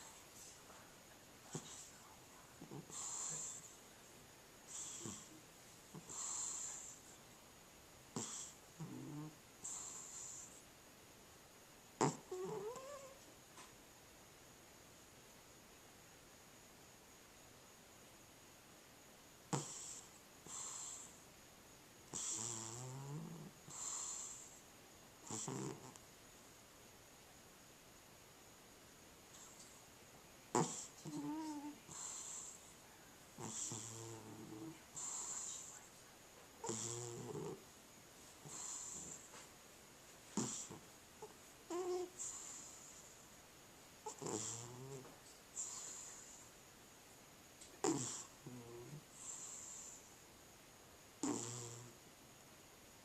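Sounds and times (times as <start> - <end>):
cat snoring: 1.5 - 2.0, 2.6 - 3.8, 4.7 - 7.1, 8.1 - 10.6, 12.0 - 13.2, 19.5 - 21.2, 22.1 - 24.6, 25.2 - 26.0, 30.5 - 32.7, 33.4 - 35.8, 36.6 - 37.6, 38.4 - 39.3, 40.4 - 43.1, 44.0 - 46.5, 47.8 - 50.1, 51.2 - 52.0.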